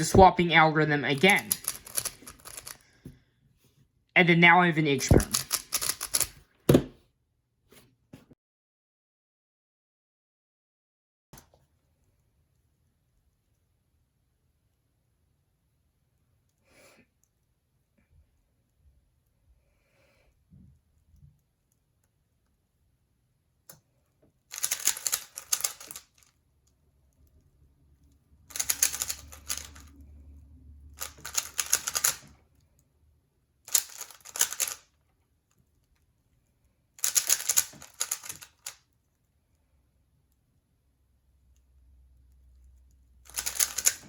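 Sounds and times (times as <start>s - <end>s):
puzzle cube clattering clicks: 0.0s - 2.8s, 4.9s - 6.4s, 24.5s - 26.3s, 28.5s - 29.9s, 31.0s - 32.4s, 33.7s - 34.9s, 37.0s - 38.8s, 43.3s - 44.0s.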